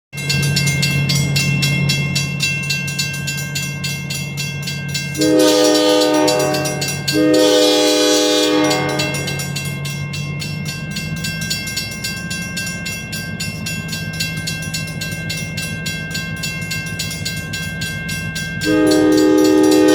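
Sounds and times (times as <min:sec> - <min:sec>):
locomotive bell ringing: 0:00.1 - 0:19.9
locomotive engine running: 0:00.2 - 0:19.9
multi-chime air horn blasts: 0:05.0 - 0:09.8, 0:18.6 - 0:19.9.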